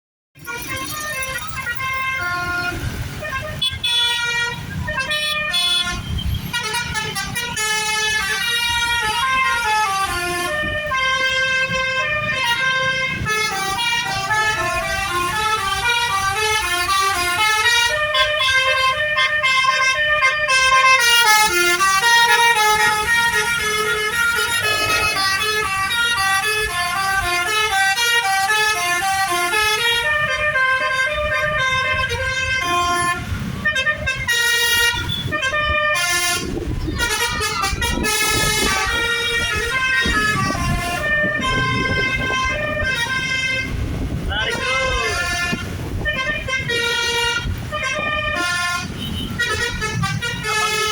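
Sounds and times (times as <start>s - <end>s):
tuned bus horns playing melody: 0.4s - 50.9s
low vehicle rumble: 28.9s - 50.9s.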